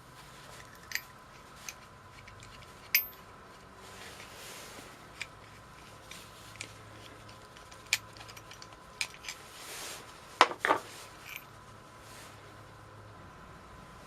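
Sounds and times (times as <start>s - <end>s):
soft rustling: 0.0s - 12.7s
metal tools and parts clinking: 0.5s - 3.3s, 5.1s - 9.5s, 10.4s - 11.6s.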